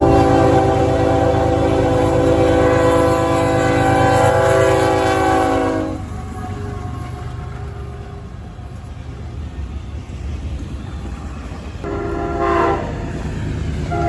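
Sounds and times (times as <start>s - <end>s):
locomotive air horn blast: 0.0s - 6.1s, 11.8s - 13.2s
train rumble: 0.0s - 14.0s.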